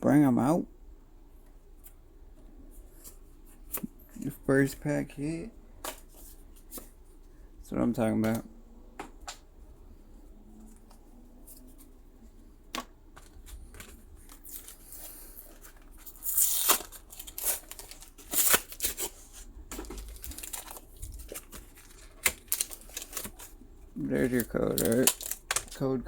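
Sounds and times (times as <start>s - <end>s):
foil wrapper tearing and crinkling: 13.8s - 23.5s, 24.1s - 25.8s.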